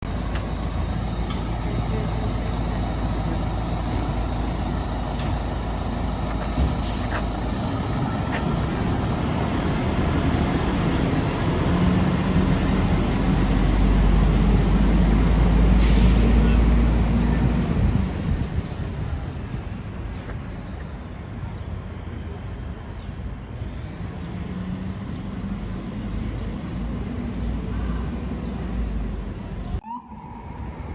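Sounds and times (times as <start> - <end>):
fire truck engine rumbling: 0.0 - 30.9
air brakes hissing: 0.2 - 9.6, 15.8 - 16.4.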